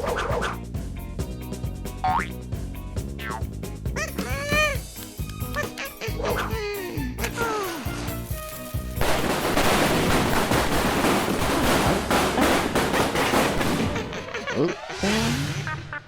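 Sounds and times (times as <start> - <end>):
rapid cartoon bangs: 9.0 - 16.0.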